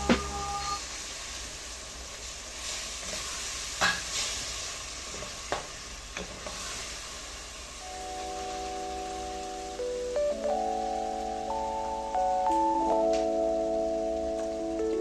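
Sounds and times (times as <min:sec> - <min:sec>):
food sizzling in a pan: 0:00.0 - 0:15.0
background music: 0:07.9 - 0:15.0.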